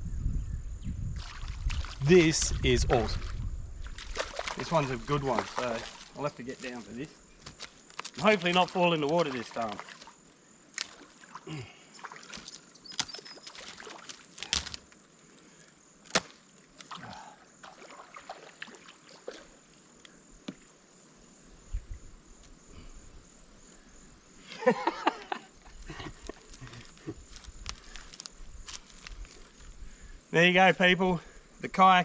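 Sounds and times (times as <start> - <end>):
footsteps scrambling through brush: 2.9 - 10.2, 25.7 - 29.8
sticks snapping underfoot: 7.4 - 8.3, 12.3 - 15.0, 16.0 - 17.1, 26.2 - 29.6.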